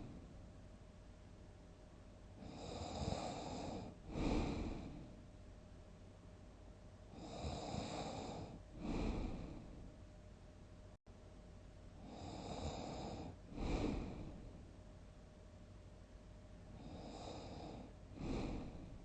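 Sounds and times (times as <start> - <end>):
person snoring heavily: 2.4 - 5.1, 7.2 - 9.8, 12.0 - 14.5, 16.8 - 19.0.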